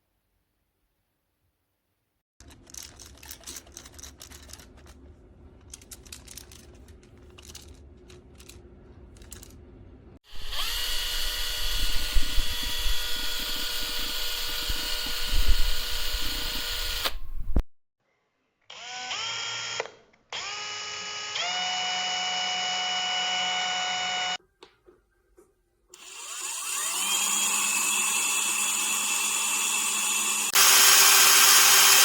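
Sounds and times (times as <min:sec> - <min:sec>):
drill motor running high pitch: 0:10.3 - 0:17.2, 0:20.4 - 0:24.4, 0:26.0 - 0:32.0.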